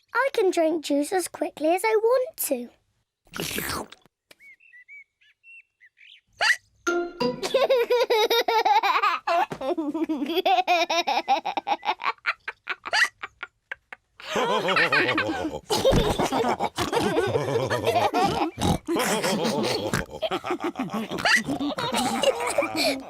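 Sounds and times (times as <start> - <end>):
cartoon pigs laughing and snorting: 7.4 - 23.0.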